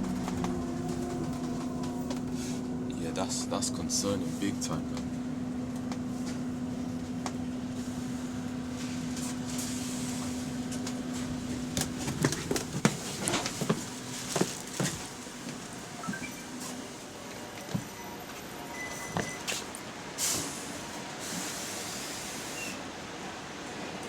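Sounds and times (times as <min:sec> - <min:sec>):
sharp clicks and rattles: 0:00.0 - 0:02.4
electric bus humming: 0:00.0 - 0:24.0.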